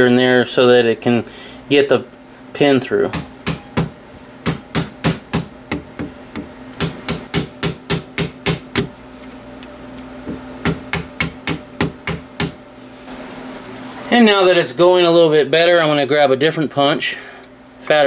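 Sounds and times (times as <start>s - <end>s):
hammer tapping a punch: 3.1s - 8.9s, 10.3s - 12.6s.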